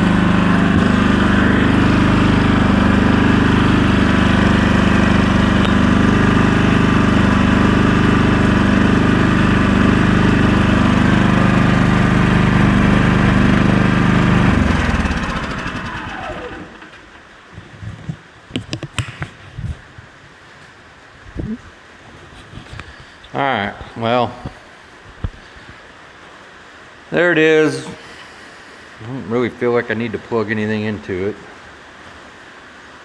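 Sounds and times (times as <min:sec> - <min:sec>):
generator engine drone: 0:00.0 - 0:17.5.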